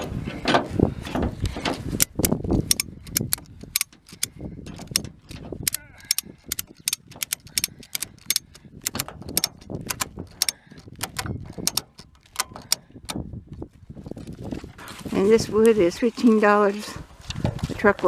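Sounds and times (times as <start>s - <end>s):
wind rumble on microphone: 0.0s - 18.0s
strap ratchet metallic clicks: 2.0s - 13.2s.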